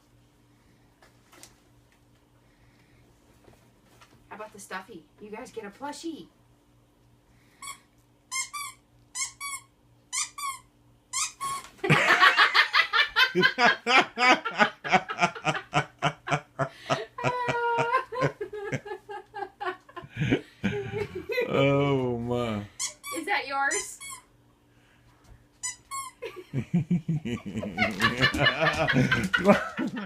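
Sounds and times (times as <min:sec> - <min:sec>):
squeaky dog toy squeaking: 0:07.6 - 0:11.7, 0:22.8 - 0:24.3, 0:25.6 - 0:26.2
hearty laughter: 0:11.8 - 0:21.6, 0:26.2 - 0:30.0.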